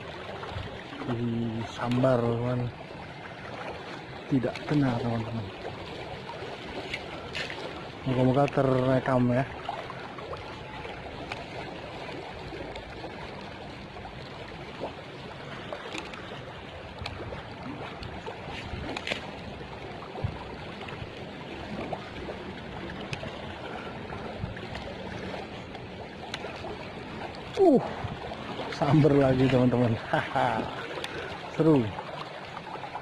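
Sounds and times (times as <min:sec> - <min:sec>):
river rushing: 0:00.0 - 0:33.0.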